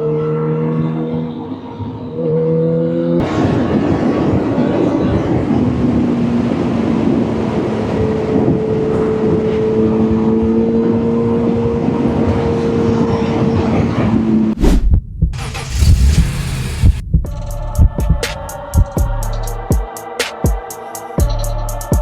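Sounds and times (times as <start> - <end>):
motorcycle engine running: 15.4 - 17.0.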